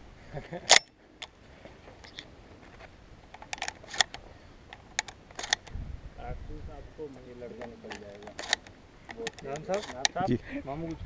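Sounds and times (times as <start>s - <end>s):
shotgun action clicking: 3.4s - 5.7s, 7.6s - 10.2s.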